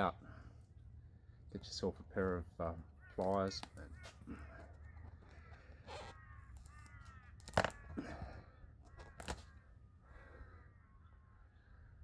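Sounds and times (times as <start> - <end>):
crows cawing: 2.8 - 12.0.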